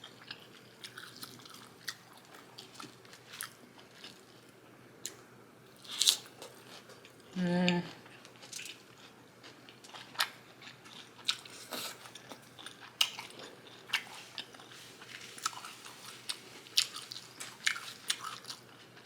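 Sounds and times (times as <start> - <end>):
person chewing: 0.1 - 4.4, 8.0 - 18.9.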